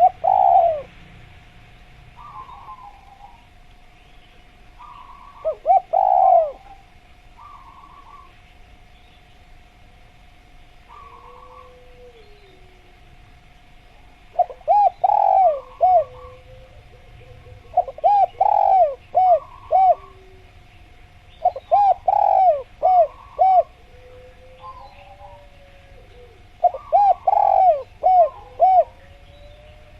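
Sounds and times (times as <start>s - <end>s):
dove cooing: 0.0s - 1.0s, 2.2s - 3.6s, 4.8s - 8.4s, 10.9s - 13.0s, 13.9s - 20.6s, 21.3s - 29.9s
faint steady tone: 0.0s - 29.9s
faint bird chirps: 2.2s - 9.4s, 10.8s - 12.7s.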